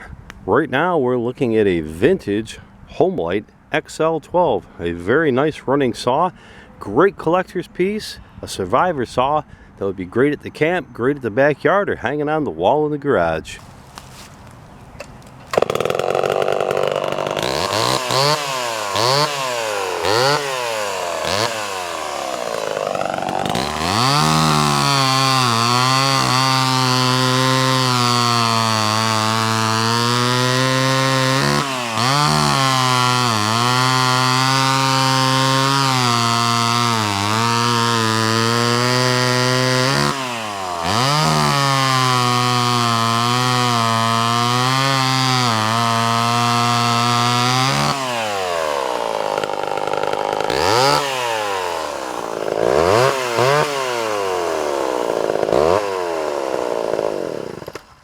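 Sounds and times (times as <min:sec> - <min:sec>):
chainsaw engine revving: 0:15.0 - 0:57.9.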